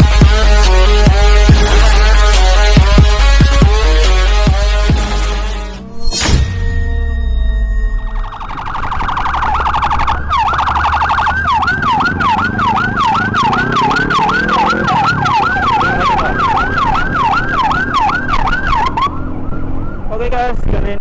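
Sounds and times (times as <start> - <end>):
ambulance siren: 7.9 - 20.1
vehicle engine accelerating: 8.1 - 20.3.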